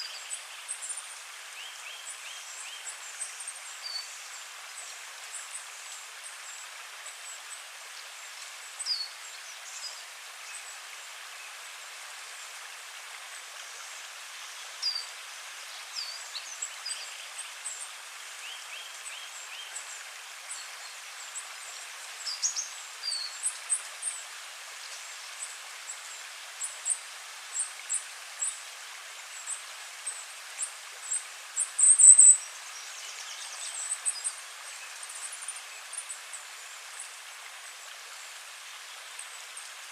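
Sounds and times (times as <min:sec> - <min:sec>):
running water: 0:00.0 - 0:39.9
birds chirping: 0:31.8 - 0:32.4.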